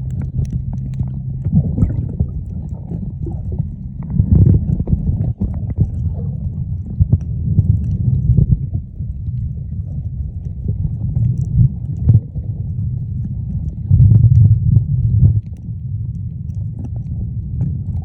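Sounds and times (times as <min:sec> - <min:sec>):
muffled underwater water rumble: 0:00.0 - 0:18.0.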